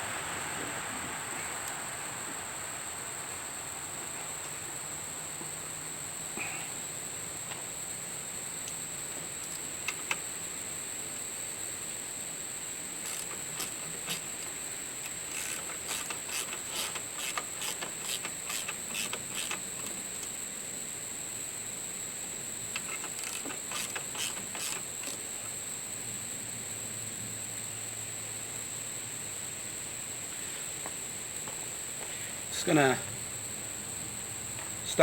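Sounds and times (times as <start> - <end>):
steady high hiss: 0.0 - 35.0
ratchet wrench clicking: 9.4 - 10.3, 13.0 - 20.3, 22.7 - 25.3.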